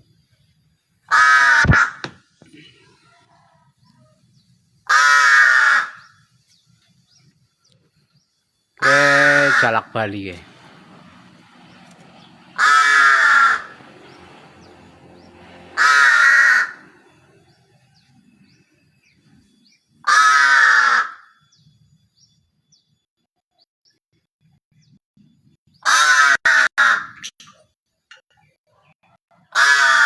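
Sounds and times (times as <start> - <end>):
crow cawing: 1.1 - 2.1, 4.8 - 6.2, 8.8 - 10.0, 12.2 - 13.8, 15.7 - 17.2, 20.0 - 21.4, 25.8 - 27.2, 29.4 - 30.0.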